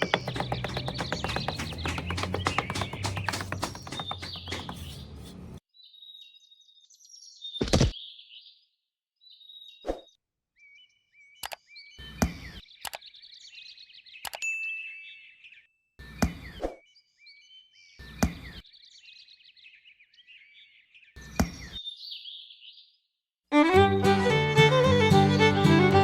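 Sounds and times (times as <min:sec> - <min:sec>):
sharp knocks: 0:00.0 - 0:05.2
small birds chirping: 0:00.0 - 0:09.9, 0:10.6 - 0:23.1.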